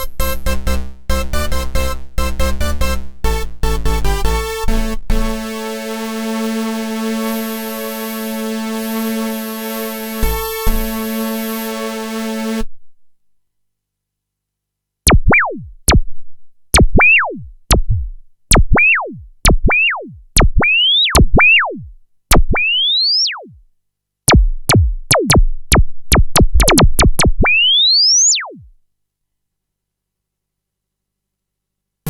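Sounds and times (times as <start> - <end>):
synthesizer sweep notes: 15.1 - 16.1, 16.8 - 23.6, 24.3 - 28.7.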